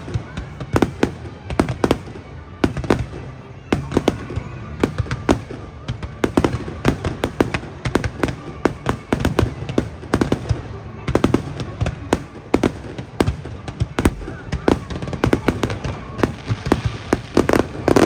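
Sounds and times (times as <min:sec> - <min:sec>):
fireworks bangs and crackles: 0:00.0 - 0:18.0.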